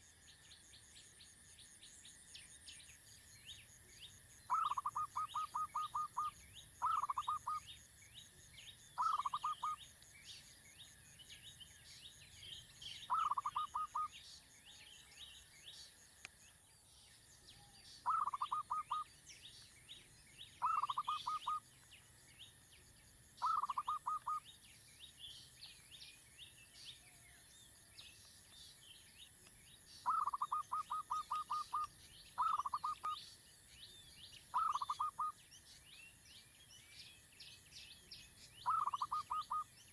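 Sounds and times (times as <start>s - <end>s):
insect and bird chirping: 0.0s - 39.9s
bird calls rapid repeated notes: 4.5s - 7.6s, 9.0s - 9.8s, 13.1s - 14.1s, 18.0s - 19.1s, 20.6s - 21.6s, 23.4s - 24.4s, 30.0s - 33.2s, 34.5s - 35.3s, 38.6s - 39.7s.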